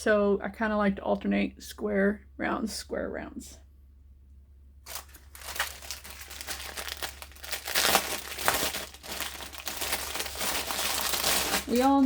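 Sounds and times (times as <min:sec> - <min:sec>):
plastic packaging crinkling: 0:04.8 - 0:12.0.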